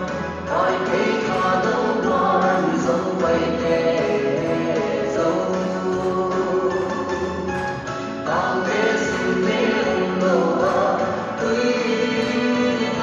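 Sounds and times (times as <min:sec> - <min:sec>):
group singing: 0:00.0 - 0:07.3, 0:08.2 - 0:13.0
musical accompaniment: 0:00.0 - 0:13.0.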